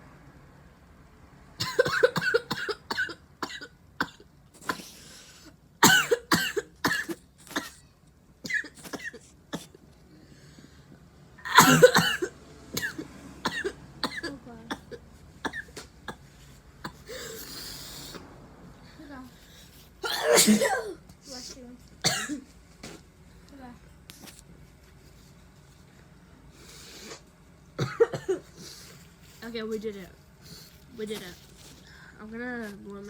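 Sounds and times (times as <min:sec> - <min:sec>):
woman coughing: 0:01.6 - 0:05.0, 0:05.8 - 0:07.8, 0:08.4 - 0:09.8, 0:11.4 - 0:16.2, 0:20.0 - 0:21.0, 0:22.0 - 0:22.5, 0:27.8 - 0:28.6.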